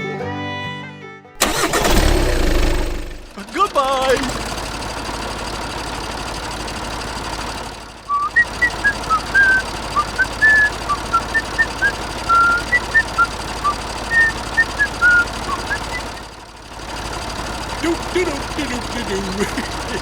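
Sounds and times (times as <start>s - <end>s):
person whistling short notes: 8.1s - 16.2s.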